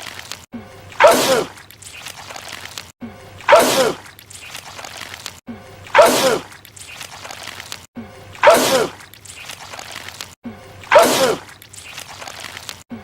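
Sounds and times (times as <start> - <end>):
man sneezing loudly: 6.0 - 6.5, 8.4 - 9.0, 10.9 - 11.4.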